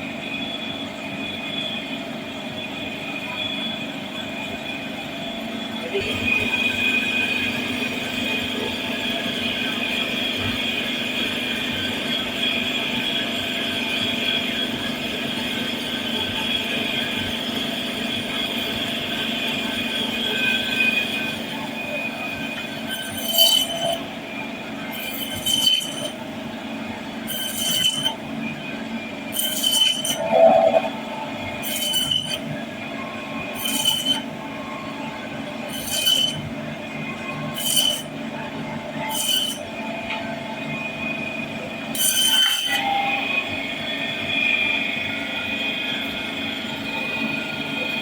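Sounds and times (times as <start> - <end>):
steady background hum: 0.0 - 48.0
knife scraping fish: 22.9 - 24.0, 24.9 - 26.2, 27.3 - 28.2, 29.3 - 30.8, 31.6 - 32.4, 33.5 - 34.3, 35.7 - 36.4, 37.5 - 38.1, 39.0 - 39.6.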